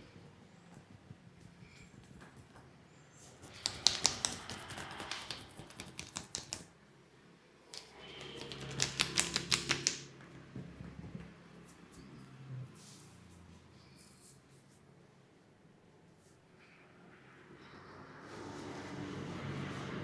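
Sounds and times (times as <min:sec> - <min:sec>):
hands tapping on a head: 0:03.4 - 0:06.7, 0:07.8 - 0:10.1.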